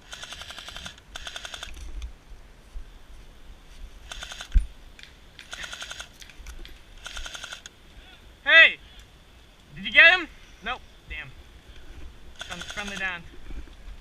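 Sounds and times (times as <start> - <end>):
airsoft rifle bursts: 0.0 - 1.8, 4.0 - 4.6, 5.4 - 6.2, 7.0 - 7.7, 12.4 - 13.2.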